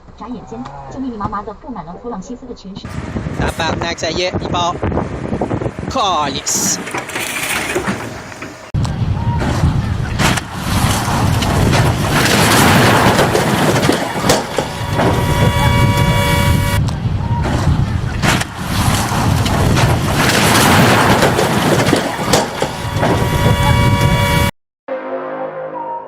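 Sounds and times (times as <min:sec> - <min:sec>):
road noise: 0:02.8 - 0:24.5
vehicle engine rumble: 0:02.8 - 0:24.5
vehicle horn: 0:12.2 - 0:16.8, 0:22.2 - 0:25.6.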